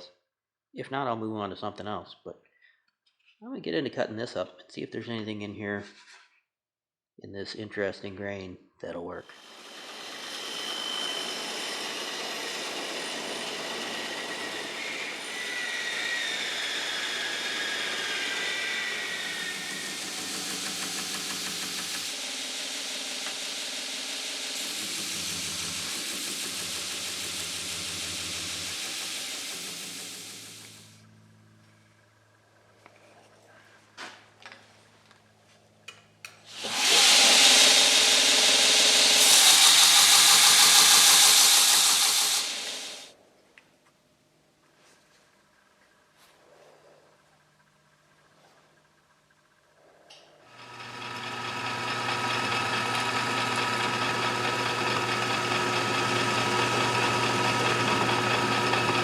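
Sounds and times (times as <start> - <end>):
power saw cutting wood: 9.2 - 31.0, 36.5 - 43.2, 50.5 - 59.0.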